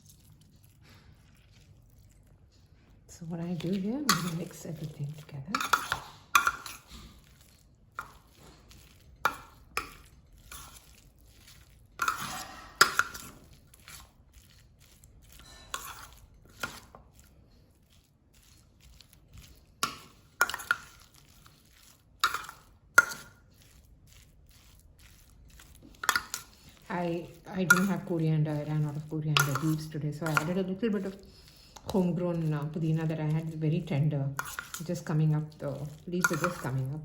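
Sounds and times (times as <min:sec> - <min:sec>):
utensil scraping bowl: 0:00.0 - 0:37.0
utensil clacking against bowl: 0:03.5 - 0:06.9, 0:25.8 - 0:33.5, 0:34.3 - 0:35.1, 0:35.8 - 0:36.8.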